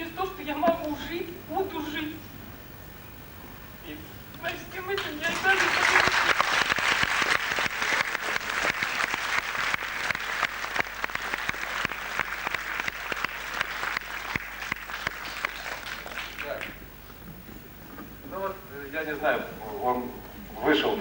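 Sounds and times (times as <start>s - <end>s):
audience applauding: 4.9s - 16.9s.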